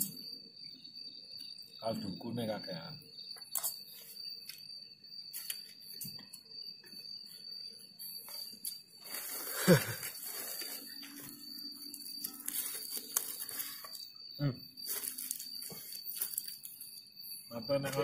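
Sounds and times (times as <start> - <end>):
high insect chirring: 0.0 - 18.0.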